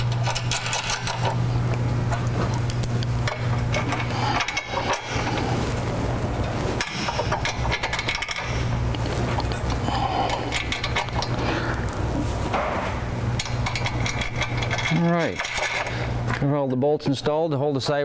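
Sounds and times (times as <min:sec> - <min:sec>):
metallic clicks and rattles of tools: 0:00.0 - 0:01.4, 0:13.4 - 0:16.0
steady low hum: 0:00.0 - 0:16.5.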